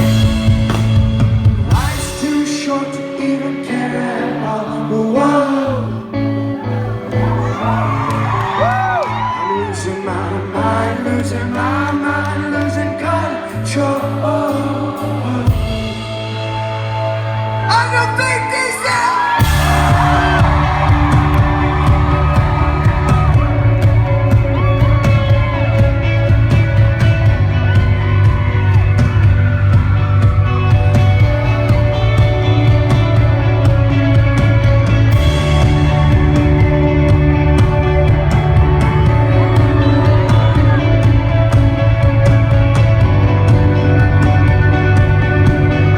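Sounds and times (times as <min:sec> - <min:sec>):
strong bass: 0:00.0 - 0:02.7, 0:04.5 - 0:18.6, 0:19.3 - 0:45.9
rock band playing live: 0:00.0 - 0:45.9
person singing: 0:01.6 - 0:28.8, 0:30.7 - 0:45.9.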